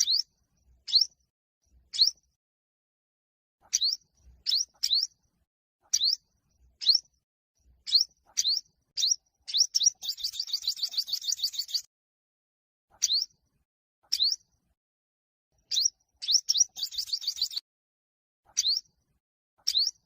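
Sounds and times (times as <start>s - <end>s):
sunbird singing: 0.0s - 1.2s, 1.9s - 2.3s, 3.6s - 5.2s, 5.8s - 7.2s, 7.8s - 11.9s, 13.0s - 13.3s, 14.1s - 14.4s, 15.6s - 17.6s, 18.5s - 18.9s, 19.6s - 20.0s.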